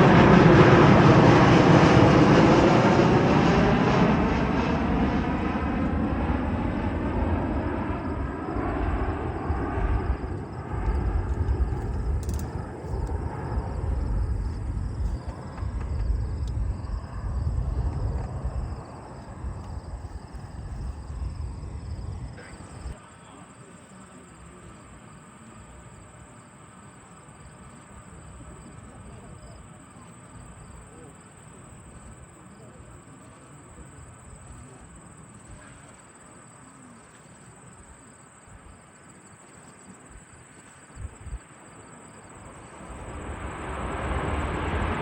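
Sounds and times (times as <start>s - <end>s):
jet engines passing: 0.0s - 27.0s, 37.4s - 45.0s.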